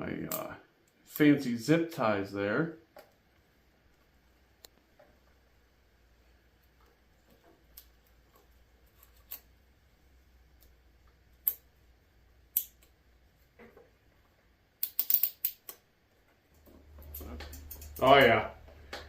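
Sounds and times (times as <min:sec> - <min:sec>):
zip ties clicking: 0:14.8 - 0:15.8.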